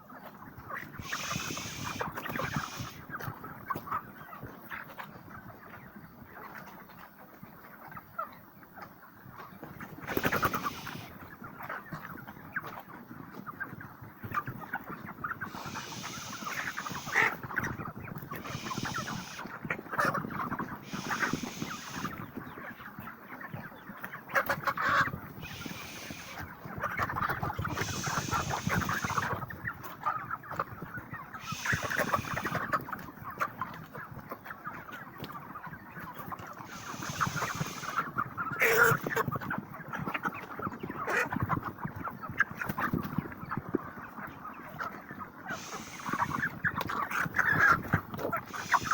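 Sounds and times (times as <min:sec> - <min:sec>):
chickens clucking and cheeping: 0:00.0 - 0:48.9
hiss: 0:01.0 - 0:03.0, 0:10.1 - 0:11.1, 0:15.5 - 0:17.3, 0:18.4 - 0:19.4, 0:20.8 - 0:22.2, 0:25.4 - 0:26.4, 0:27.7 - 0:29.3, 0:31.4 - 0:32.7, 0:36.7 - 0:38.1, 0:45.5 - 0:46.5, 0:48.5 - 0:48.9.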